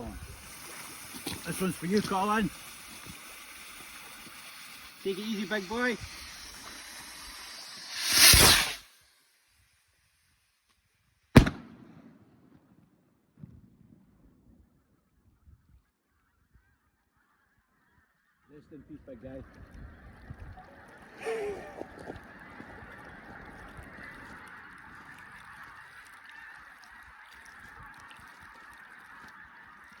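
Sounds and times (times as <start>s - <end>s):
firework rocket whoosh: 2.5s - 9.1s
firework bang: 6.1s - 8.8s, 11.4s - 12.1s
birds honking: 16.2s - 30.0s.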